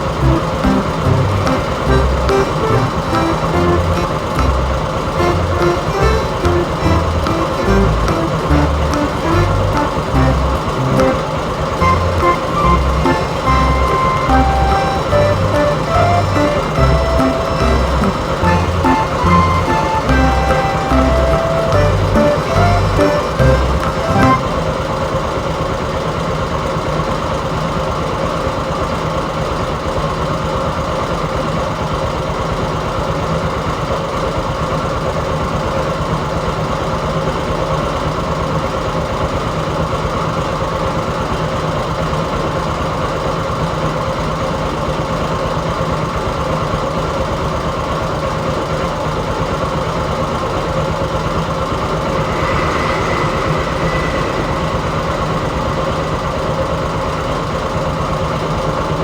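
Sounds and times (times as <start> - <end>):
heavy machine engine running: 0.0 - 25.0
high whine: 0.0 - 25.2, 51.4 - 57.1.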